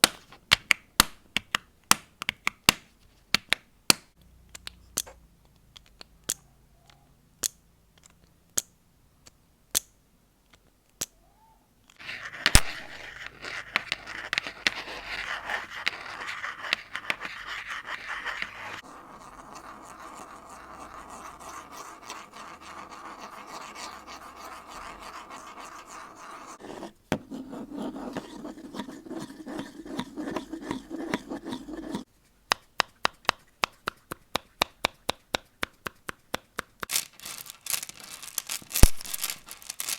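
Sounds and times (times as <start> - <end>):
scratching and rubbing: 12.0 - 32.1, 36.8 - 39.9.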